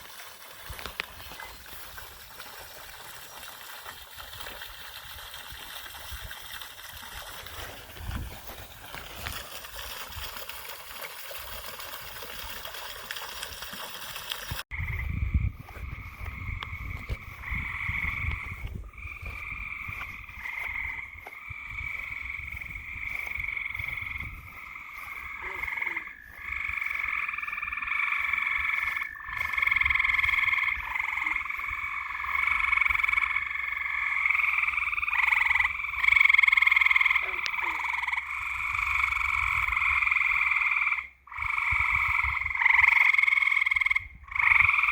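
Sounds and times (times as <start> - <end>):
chorus of frogs calling: 0.6 - 4.6, 14.4 - 44.9.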